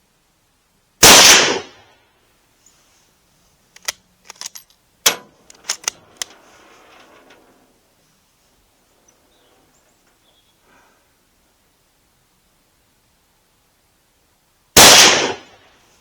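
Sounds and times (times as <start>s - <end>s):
rifle shot with echo: 1.0s - 1.6s, 14.8s - 15.5s
rifle bolt metallic clicks: 3.8s - 7.3s.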